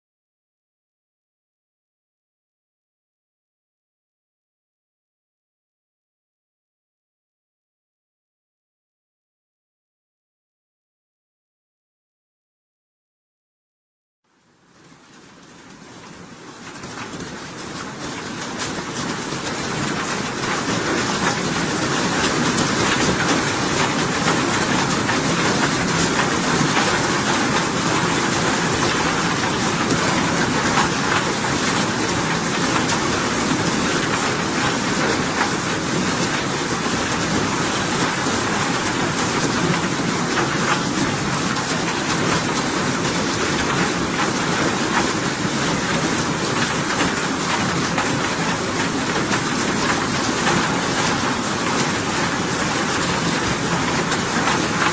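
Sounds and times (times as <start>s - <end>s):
steady rain falling: 14.3s - 54.9s.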